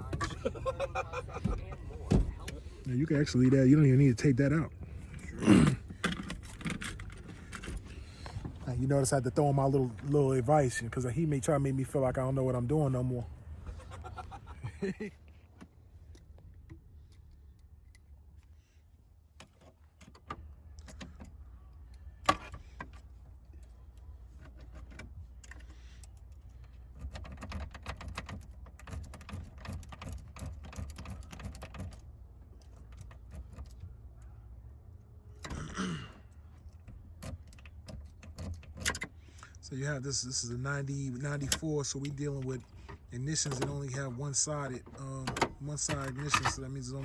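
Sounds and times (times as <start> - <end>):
metal tools clicking in a lock: 24.6 - 33.8, 36.7 - 39.2.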